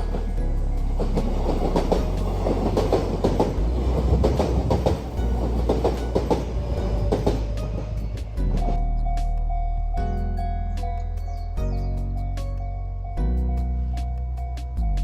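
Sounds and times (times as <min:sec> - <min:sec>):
wheels clacking over rail joints: 0:00.0 - 0:09.6
train rumble: 0:00.0 - 0:15.0.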